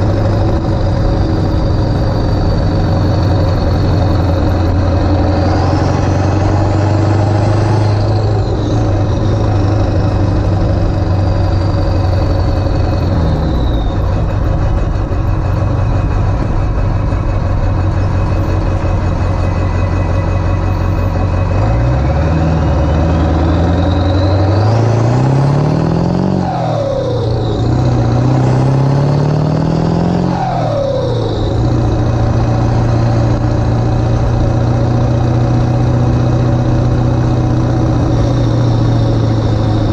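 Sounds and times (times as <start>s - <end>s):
diesel truck engine driving: 0.0s - 39.9s
turbo whistle: 0.3s - 15.2s, 22.5s - 25.3s.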